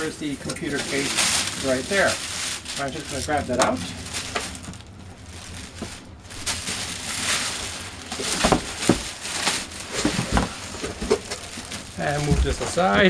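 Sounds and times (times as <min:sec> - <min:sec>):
packaging rustling and scraping: 0:00.0 - 0:13.0
dull knocks: 0:08.1 - 0:12.9.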